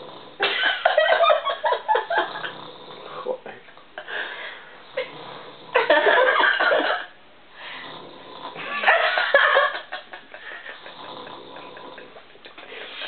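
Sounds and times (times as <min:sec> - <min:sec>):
woman snoring: 0:02.1 - 0:03.4, 0:04.1 - 0:06.0, 0:07.6 - 0:08.8, 0:10.5 - 0:12.2.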